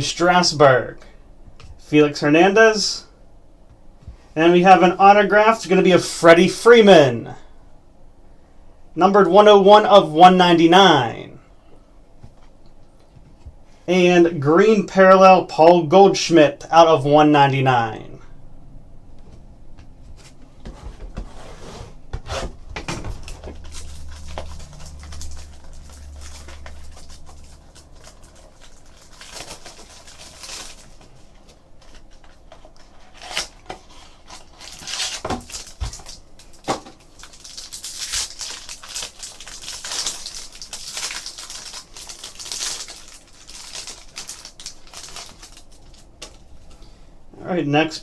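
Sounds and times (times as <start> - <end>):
low hum: 22.5 - 44.0
wrapper tearing and crinkling: 23.2 - 46.4.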